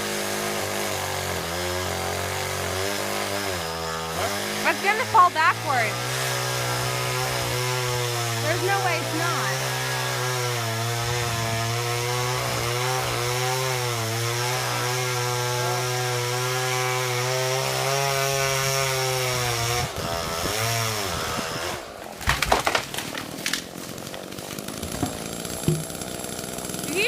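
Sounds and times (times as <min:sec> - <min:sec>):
chainsaw cutting tree trunk: 0:00.0 - 0:27.0
wood cracking and knocking: 0:22.2 - 0:26.2.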